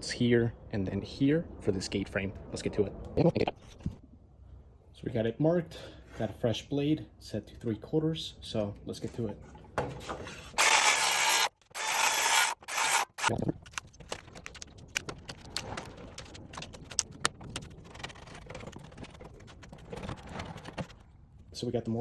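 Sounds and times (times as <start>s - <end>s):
power saw cutting wood: 10.6s - 13.3s.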